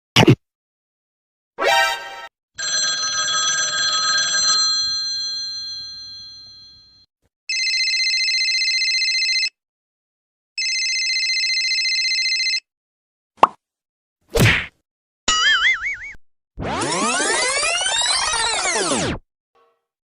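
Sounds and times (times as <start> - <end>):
old telephone bell ringing: 2.6 - 9.5, 10.6 - 12.6.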